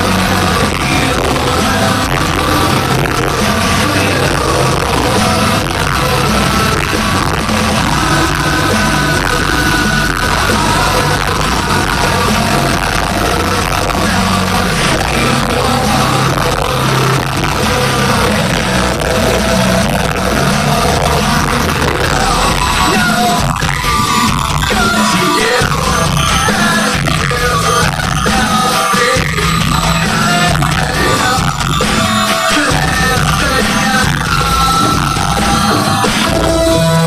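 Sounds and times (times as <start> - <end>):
distorted live rock music: 0.0 - 37.0
person singing: 0.0 - 37.0.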